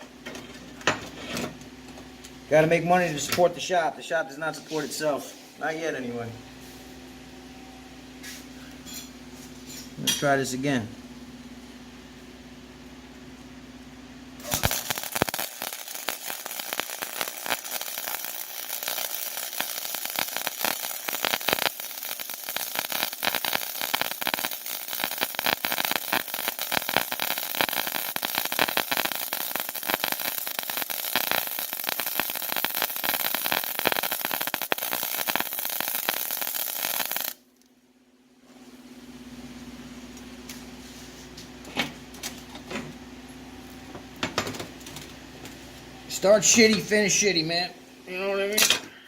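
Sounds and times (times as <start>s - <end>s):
welding arc crackling: 14.4s - 37.5s.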